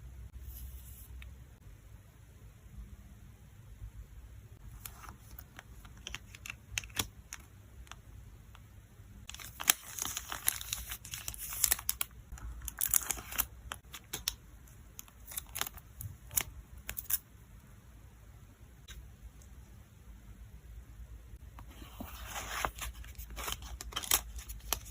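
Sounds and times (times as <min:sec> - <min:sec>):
packaging crinkling: 0:09.3 - 0:14.4, 0:15.0 - 0:17.2, 0:22.1 - 0:24.9.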